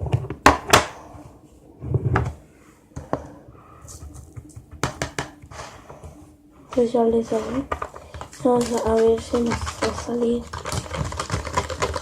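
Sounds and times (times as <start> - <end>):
clicks and knocks of containers: 7.4 - 12.0.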